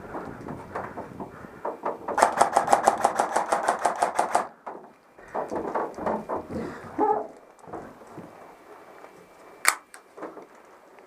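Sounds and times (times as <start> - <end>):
airsoft gun rapid fire: 2.2 - 4.5.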